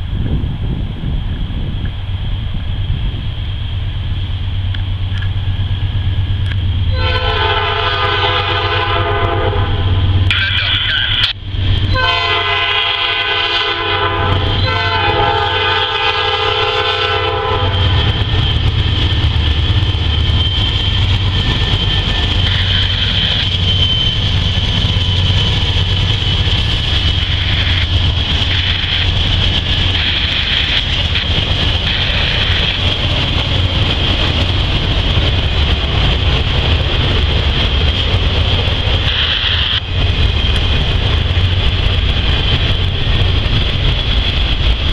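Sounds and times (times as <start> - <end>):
low rumble of train: 0.0 - 44.9
locomotive air horn blasts: 6.9 - 10.0, 11.9 - 18.0
wheels clacking on rail joints: 17.7 - 44.9.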